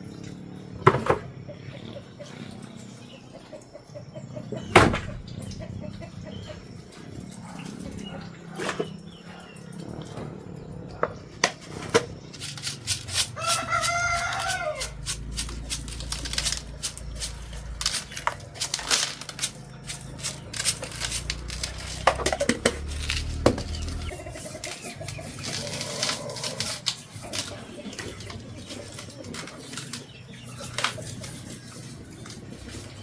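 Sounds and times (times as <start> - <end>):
chickens calling faintly: 0.8 - 33.0
rooster crowing: 13.4 - 15.0.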